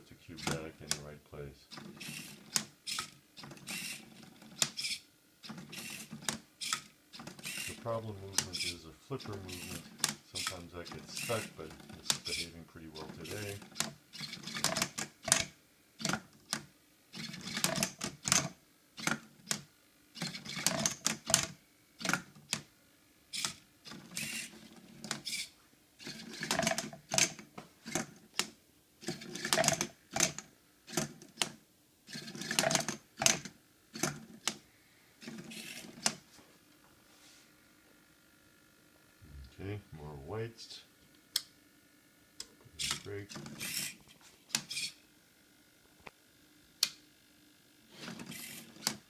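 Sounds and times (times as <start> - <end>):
servos whirring and clacking: 0.3 - 1.1, 1.7 - 19.6, 20.2 - 22.7, 23.3 - 34.6, 35.2 - 36.2, 42.4 - 45.0, 48.0 - 49.0.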